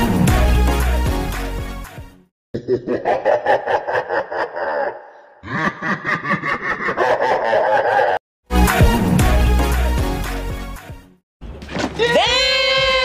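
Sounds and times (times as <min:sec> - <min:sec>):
pulsing laughter: 0:02.6 - 0:08.2.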